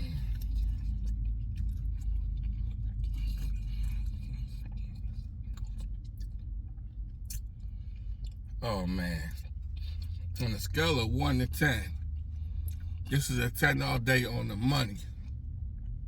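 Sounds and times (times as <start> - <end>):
person chewing: 0.0 - 6.5
steady low rumble: 0.0 - 16.0.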